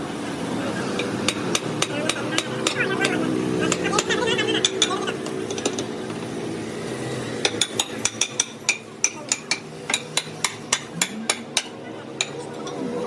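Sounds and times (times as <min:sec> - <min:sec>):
hammer tapping on metal: 0:01.0 - 0:05.9, 0:07.4 - 0:12.8.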